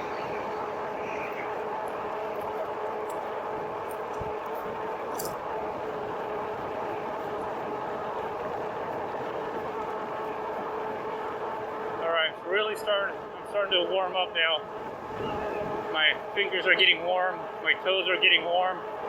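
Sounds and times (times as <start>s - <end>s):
electric bike motor hum: 0.0s - 12.0s, 14.6s - 19.0s
wind noise on microphone: 14.7s - 16.0s.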